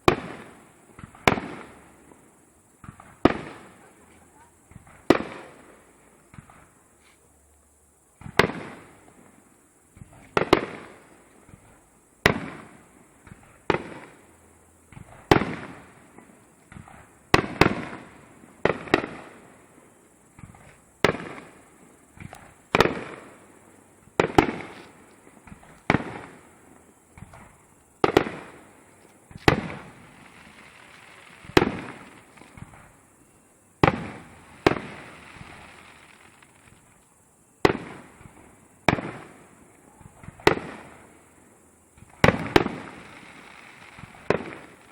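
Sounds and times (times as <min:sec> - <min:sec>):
firework shells bursting: 0:20.4 - 0:33.1.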